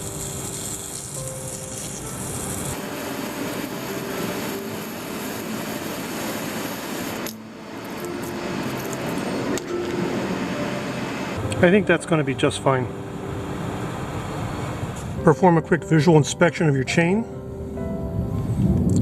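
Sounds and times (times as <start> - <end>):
water spraying hiss: 0.0 - 11.4.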